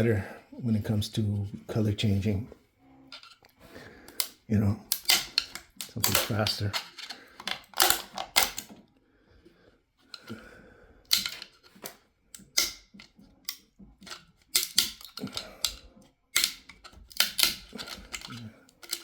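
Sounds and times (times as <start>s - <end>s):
plastic clicking and snapping: 4.1s - 8.9s, 11.1s - 19.0s.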